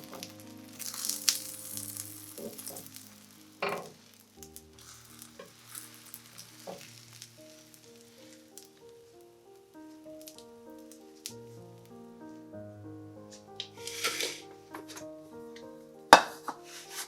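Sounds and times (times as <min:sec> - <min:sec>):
food sizzling in oil: 0:00.0 - 0:11.5, 0:13.6 - 0:14.9
soft background music: 0:00.0 - 0:17.0.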